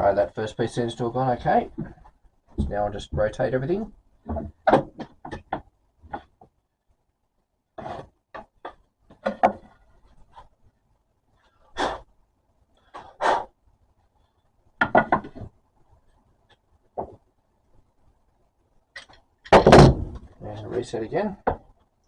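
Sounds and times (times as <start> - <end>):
wooden workpiece knocks and clunks: 1.7 - 3.4, 4.2 - 6.6, 7.8 - 9.8, 14.8 - 15.6, 17.0 - 17.3, 19.5 - 20.4, 21.4 - 21.7.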